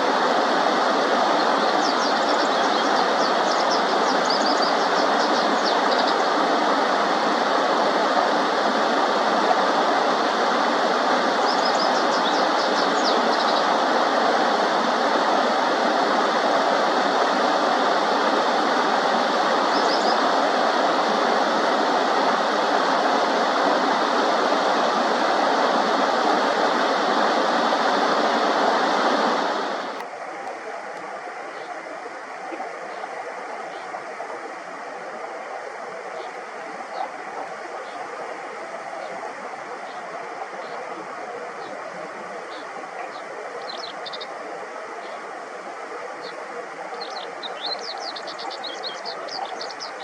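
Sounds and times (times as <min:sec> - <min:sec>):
stream water rushing: 0:00.0 - 0:50.0
faint high bird chirps: 0:42.5 - 0:44.3.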